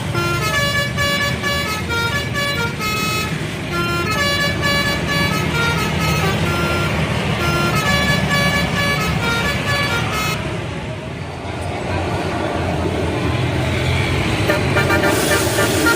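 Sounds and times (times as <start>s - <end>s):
multi-tone air horn melody: 0.0s - 10.6s, 14.4s - 15.9s
vehicle noise: 0.0s - 15.9s.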